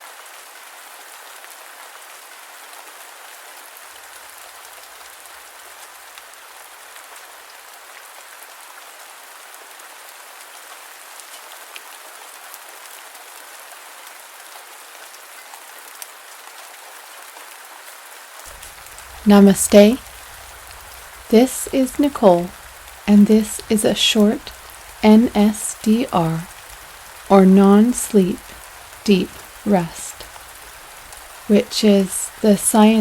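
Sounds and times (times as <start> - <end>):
steady rain hiss: 0.0 - 33.0
raindrops ticking: 18.5 - 33.0.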